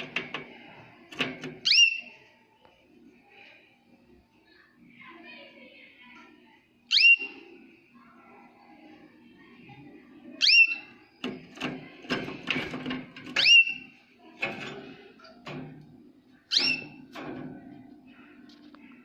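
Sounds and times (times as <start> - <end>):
clicks and knocks: 0.0 - 1.7, 11.2 - 18.8.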